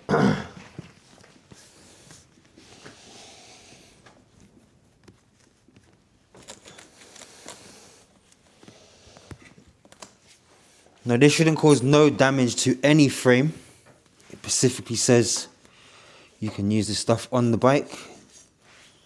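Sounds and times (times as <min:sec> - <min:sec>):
cloth rubbing on bike frame: 0:18.2 - 0:19.0.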